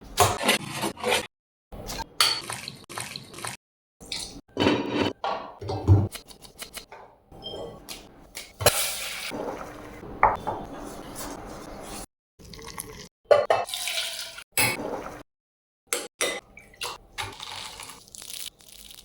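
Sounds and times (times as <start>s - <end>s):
utensils and dishes clattering: 4.5s - 7.8s.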